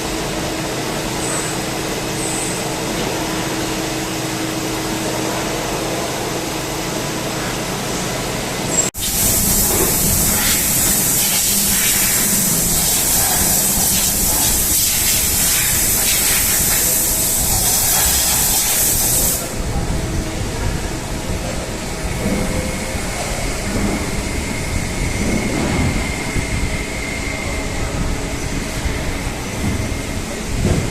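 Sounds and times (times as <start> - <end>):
spraying hiss: 9.0 - 19.5.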